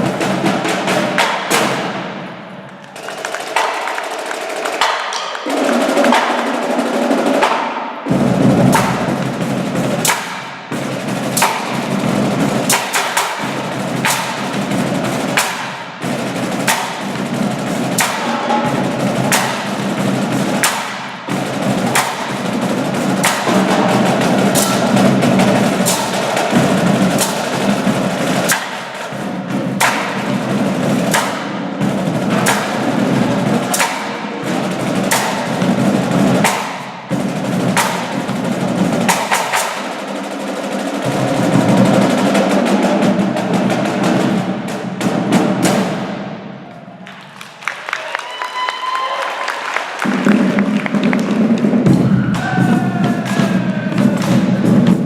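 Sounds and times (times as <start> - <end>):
snare drum patterns and rolls: 0.0 - 55.0
pitched bass drums: 8.1 - 39.5.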